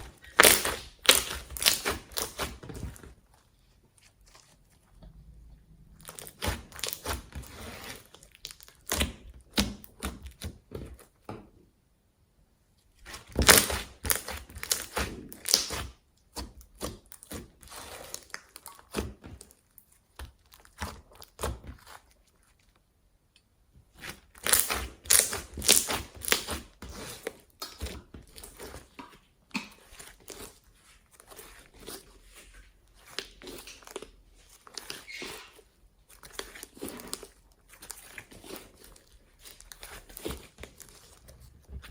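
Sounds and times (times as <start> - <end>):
slime crackling and popping: 0.0 - 2.6, 6.0 - 10.5, 13.1 - 22.1, 24.0 - 30.6.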